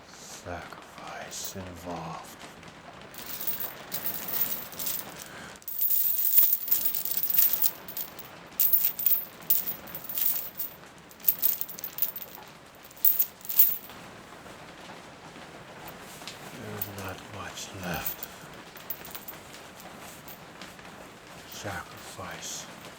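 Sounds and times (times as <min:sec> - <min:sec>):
rattling and rustling objects: 0:03.1 - 0:14.0, 0:15.7 - 0:22.1.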